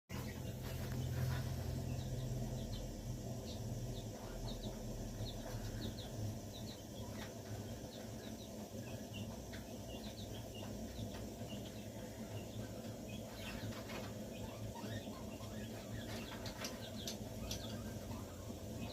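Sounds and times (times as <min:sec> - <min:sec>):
chicks peeping: 0:00.1 - 0:18.9
low steady hum: 0:00.1 - 0:18.9.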